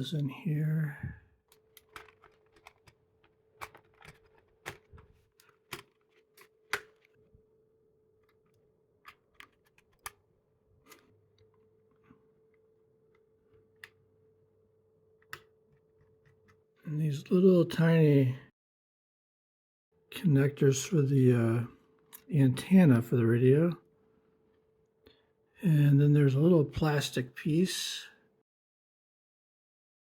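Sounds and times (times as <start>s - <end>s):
faint steady hum: 0.0s - 18.5s.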